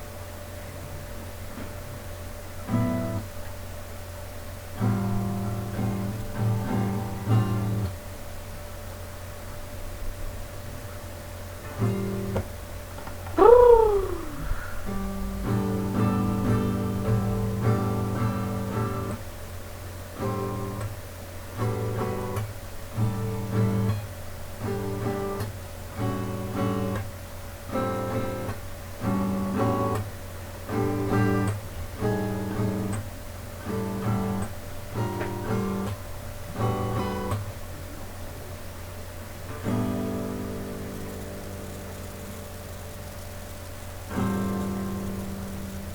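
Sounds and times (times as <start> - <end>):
acoustic guitar strumming chords: 4.8 - 8.0, 13.3 - 19.2, 20.2 - 24.0, 27.7 - 37.6, 39.4 - 45.9.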